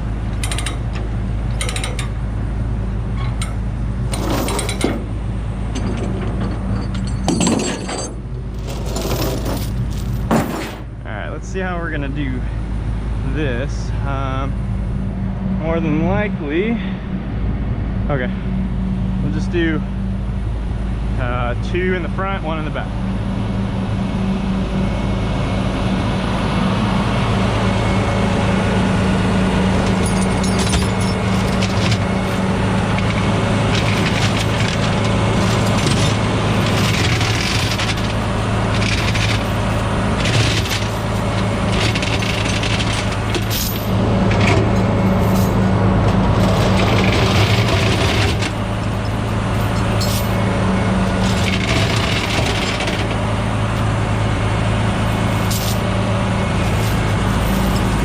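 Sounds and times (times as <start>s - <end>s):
diesel truck engine idling: 0.0s - 8.8s, 9.6s - 58.0s
metal chains clinking: 3.4s - 5.0s, 5.7s - 10.8s, 29.8s - 32.4s, 42.4s - 43.9s, 48.9s - 50.4s.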